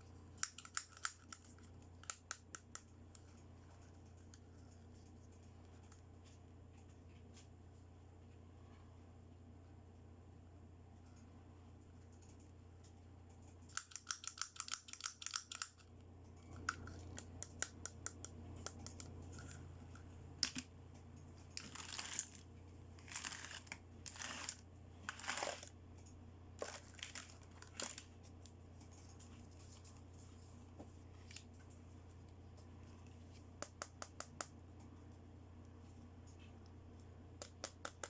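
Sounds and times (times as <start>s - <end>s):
sharp plastic clicks: 0.4s - 3.4s, 13.3s - 19.6s, 37.4s - 38.0s
packaging crinkling and tearing: 21.6s - 25.7s.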